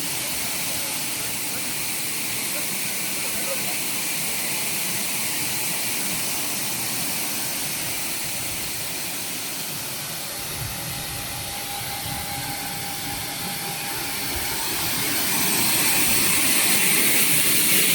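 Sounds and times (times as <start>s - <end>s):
washing machine air bubbles hissing: 0.0s - 17.9s.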